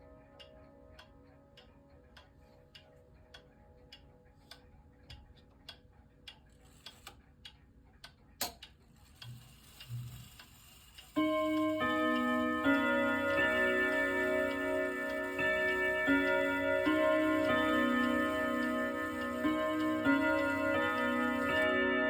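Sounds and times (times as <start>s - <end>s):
wall clock ticking: 0.0s - 22.0s
clock mechanism click: 0.4s - 22.0s
chime rods striking chords: 11.2s - 22.0s.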